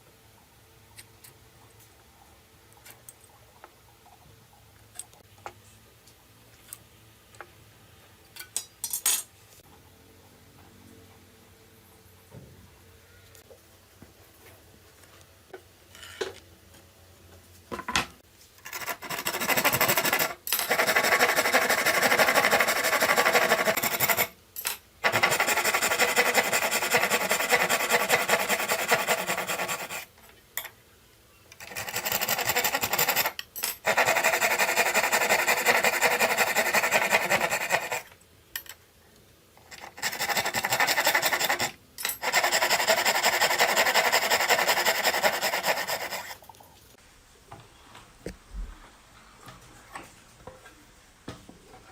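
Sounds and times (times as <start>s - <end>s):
hand tool scraping wood: 18.7s - 24.3s, 25.0s - 30.1s, 31.6s - 38.1s, 39.8s - 46.4s.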